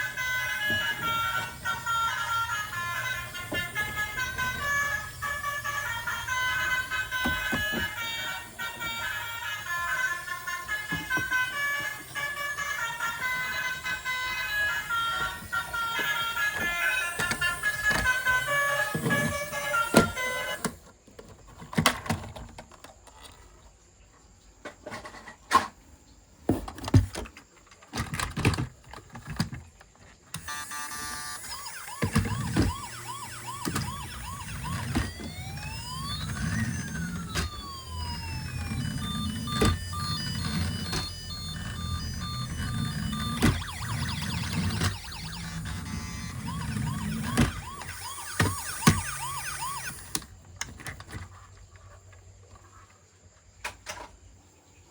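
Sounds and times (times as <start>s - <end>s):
toy siren and alarm effects: 0.0s - 20.9s, 30.4s - 51.2s
plastic toys clicking and knocking: 0.0s - 23.5s, 26.5s - 51.3s.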